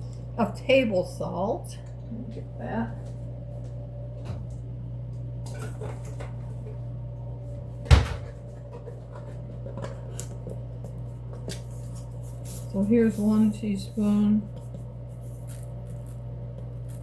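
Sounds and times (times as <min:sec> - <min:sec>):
cupboard door shutting: 0:07.9 - 0:08.4.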